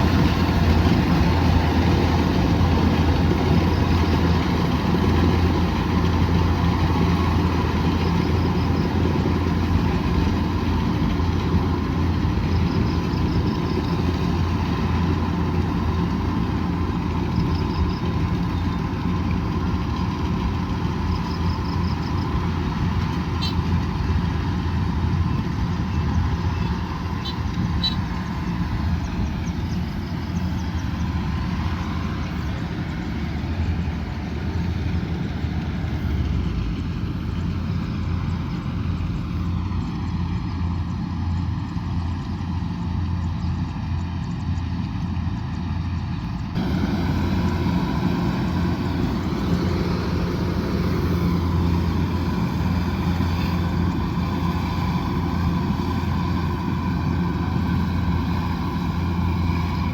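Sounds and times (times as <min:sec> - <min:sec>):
combine harvester engine hum: 0:00.0 - 0:59.9
drone of working machinery: 0:00.0 - 0:59.9.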